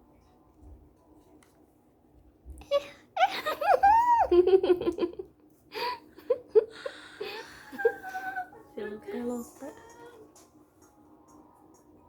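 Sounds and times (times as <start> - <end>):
giggling: 2.7 - 8.6.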